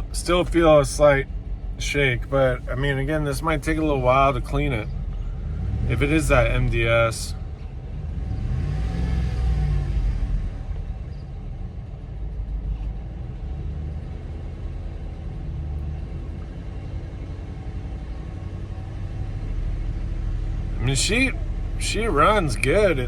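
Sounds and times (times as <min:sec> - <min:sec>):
truck engine idling roughly: 0:00.0 - 0:07.9.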